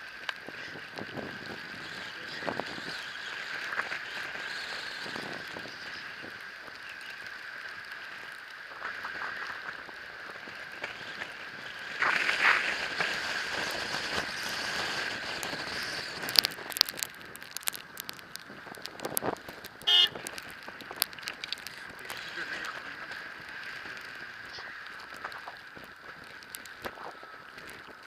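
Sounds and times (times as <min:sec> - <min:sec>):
tyres hissing through snow: 0:00.5 - 0:07.5, 0:08.7 - 0:19.2, 0:21.0 - 0:28.0
sharp clicks: 0:15.4 - 0:22.9.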